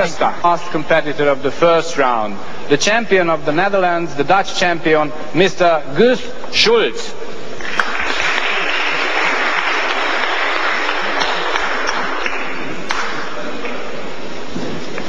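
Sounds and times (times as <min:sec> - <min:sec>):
audience applauding: 0:07.6 - 0:13.9.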